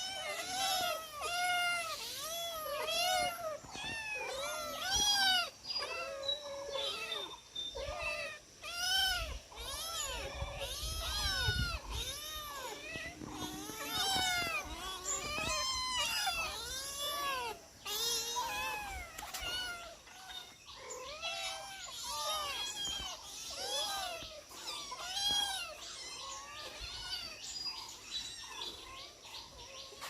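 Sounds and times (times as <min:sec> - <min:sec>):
cats meowing: 0:00.0 - 0:30.0.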